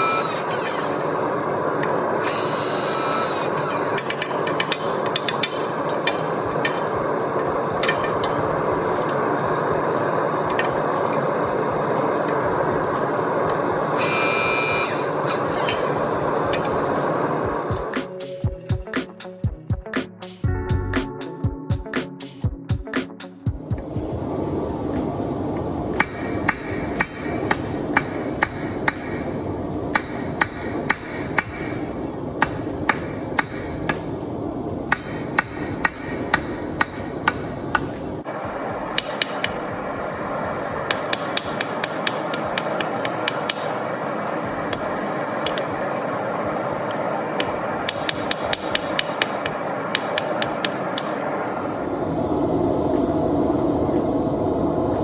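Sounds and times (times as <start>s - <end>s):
hammer striking steel on anvil: 2.3s - 8.5s, 25.9s - 34.2s, 34.9s - 38.2s, 38.9s - 39.7s, 40.9s - 44.0s, 47.4s - 51.2s
steady rushing noise: 3.8s - 55.0s.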